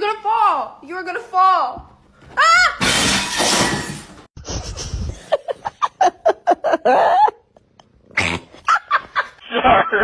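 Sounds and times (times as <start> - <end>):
person laughing: 4.5 - 7.9, 8.6 - 10.0.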